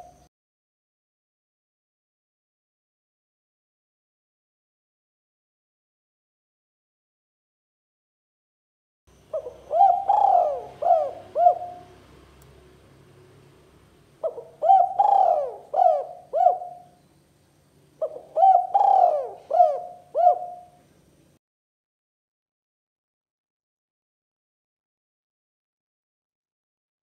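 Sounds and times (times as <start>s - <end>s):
dove cooing: 9.3s - 12.1s, 14.2s - 17.0s, 18.0s - 20.9s.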